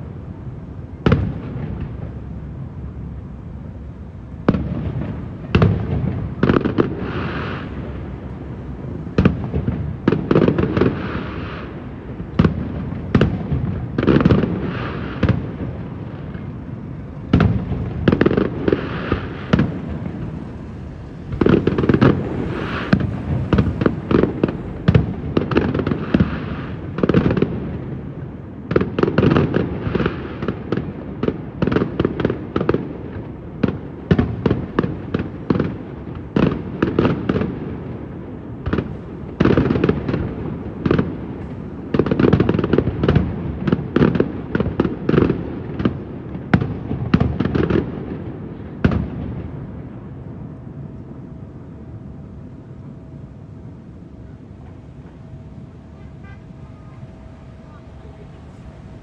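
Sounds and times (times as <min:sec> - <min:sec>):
fireworks bursts and crackling bangs: 0:00.8 - 0:59.0
rumbling echo: 0:15.4 - 0:28.1.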